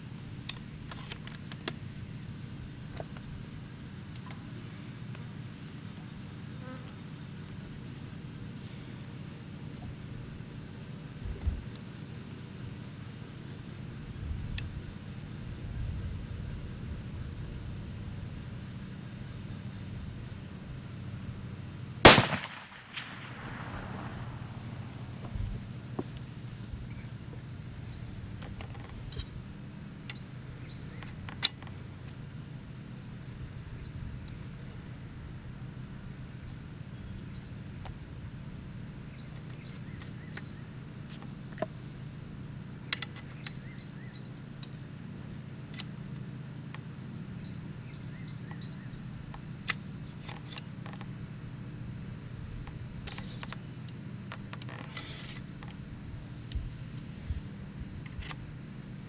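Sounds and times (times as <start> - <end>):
rifle shot with echo: 22.0 - 25.9.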